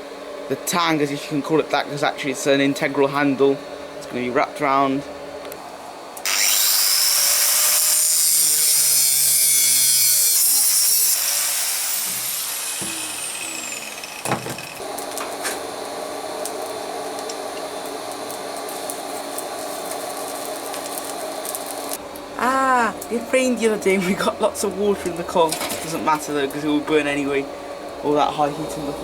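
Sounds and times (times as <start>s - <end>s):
power tool cutting steel: 6.2s - 16.4s
steady hum: 11.8s - 29.0s.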